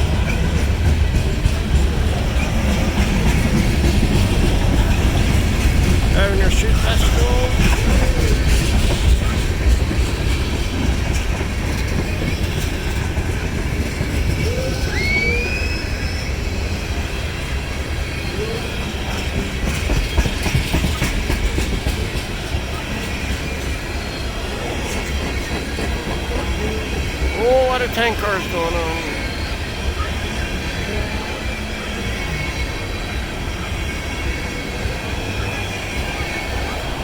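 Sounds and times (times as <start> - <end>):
freight train wheels rumbling: 0.0 - 37.0
brief rising squeal: 14.7 - 16.5.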